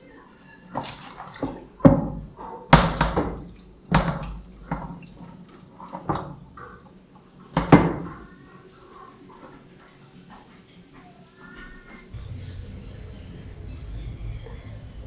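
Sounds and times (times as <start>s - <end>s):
dishes knocking: 0.8s - 5.3s, 7.6s - 8.2s
water running and dripping: 0.8s - 8.3s, 12.1s - 15.0s.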